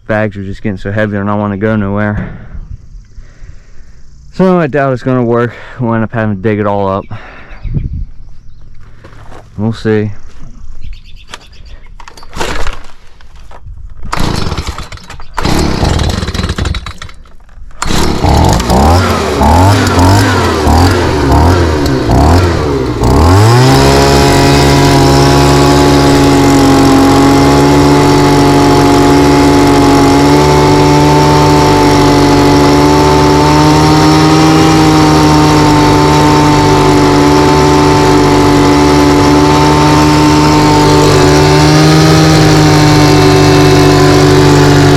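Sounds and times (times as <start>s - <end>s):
loud thumps: 2.0s - 2.9s, 14.0s - 23.6s
small engine revving: 14.1s - 17.2s, 17.8s - 44.9s.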